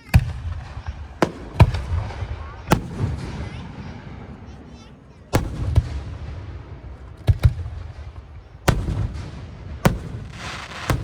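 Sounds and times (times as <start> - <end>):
low rumble of echoing bursts: 0.0 - 10.3.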